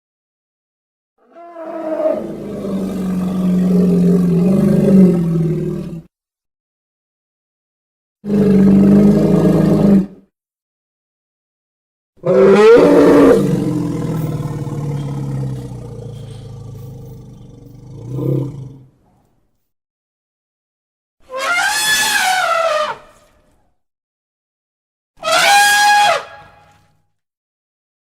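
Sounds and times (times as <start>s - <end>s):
creature roar: 1.3s - 6.1s, 12.2s - 16.1s.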